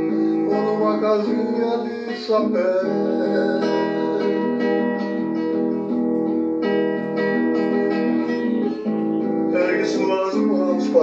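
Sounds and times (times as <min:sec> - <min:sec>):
acoustic guitar strumming: 0:00.0 - 0:11.0.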